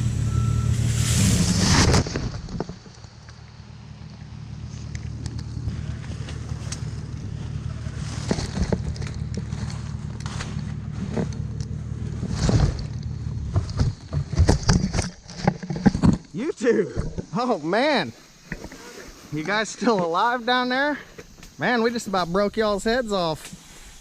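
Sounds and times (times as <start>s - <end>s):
engine running: 0.0s - 16.3s
tree crashing down: 0.7s - 3.5s, 5.7s - 16.4s.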